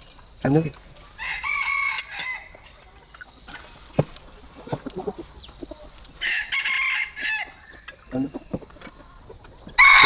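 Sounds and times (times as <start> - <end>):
chicken clucks: 0.2 - 10.0
rooster crowing: 1.2 - 2.6, 6.2 - 7.7, 9.8 - 10.0.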